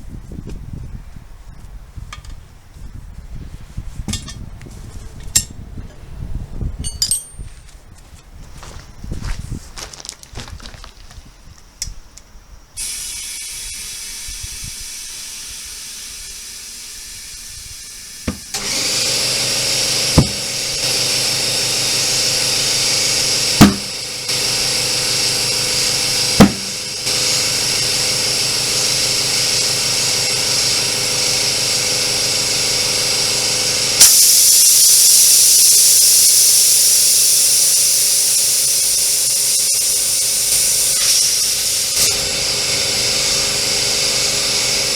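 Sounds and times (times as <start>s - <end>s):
compressed air hissing into tyre: 12.8s - 32.4s, 33.8s - 44.9s
air compressor running: 12.8s - 44.9s
sharp bangs: 20.0s - 21.0s, 23.6s - 24.0s, 26.4s - 27.2s.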